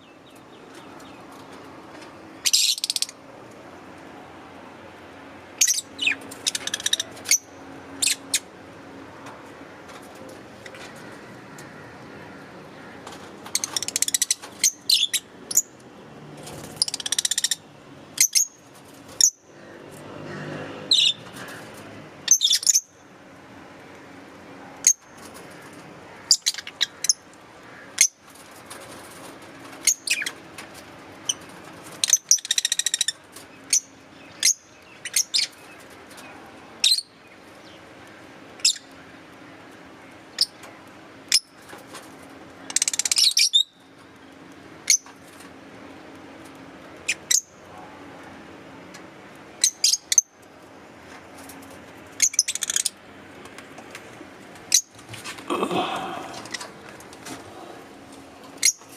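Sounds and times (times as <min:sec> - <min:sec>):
rapid bird chatter: 0:00.0 - 0:03.2, 0:05.2 - 0:15.8, 0:16.4 - 0:47.6, 0:51.0 - 0:58.9
lovebirds chirping: 0:12.7 - 0:15.8.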